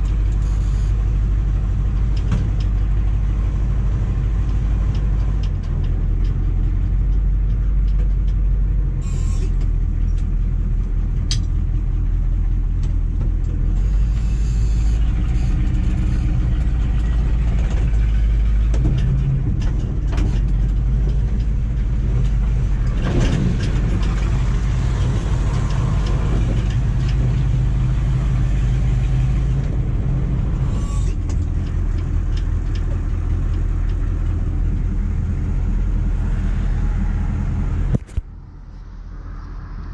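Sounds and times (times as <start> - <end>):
diesel truck engine droning: 0.0 - 39.9
short engine knocks: 16.5 - 27.6.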